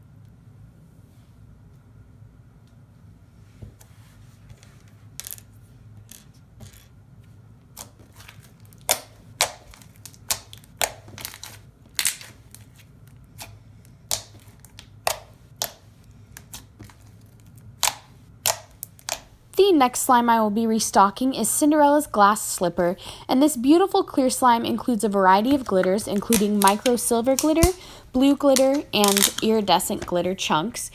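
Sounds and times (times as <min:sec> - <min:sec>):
low steady hum: 0:00.0 - 0:30.9
slime clicking and popping: 0:08.8 - 0:12.3, 0:14.1 - 0:15.8, 0:17.8 - 0:19.3, 0:25.5 - 0:30.1.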